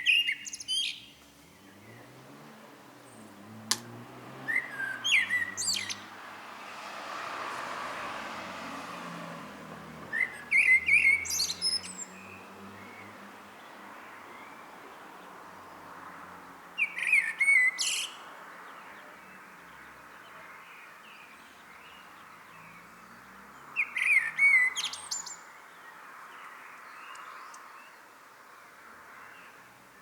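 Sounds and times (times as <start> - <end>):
blackbird singing: 0.0 - 2.2, 3.0 - 6.1, 10.0 - 14.7, 16.8 - 28.1.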